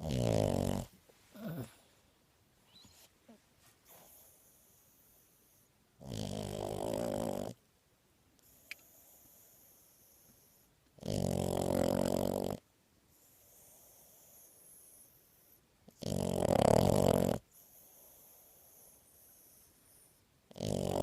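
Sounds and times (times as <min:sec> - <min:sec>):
dog snoring: 0:00.0 - 0:01.8, 0:06.0 - 0:07.6, 0:11.0 - 0:12.6, 0:15.9 - 0:21.0
dog breathing softly: 0:01.3 - 0:05.8.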